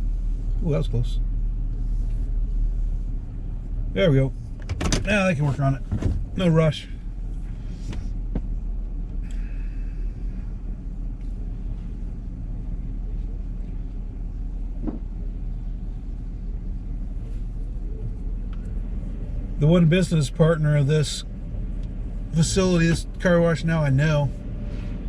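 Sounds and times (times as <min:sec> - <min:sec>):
truck engine idling: 0:00.0 - 0:25.0.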